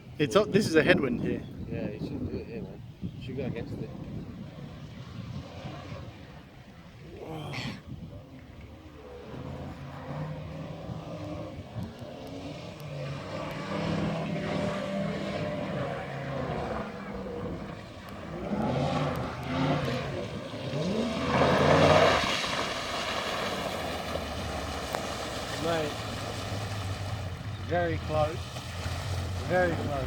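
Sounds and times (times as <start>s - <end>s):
outboard motor running: 7.9s - 21.8s, 23.6s - 30.0s.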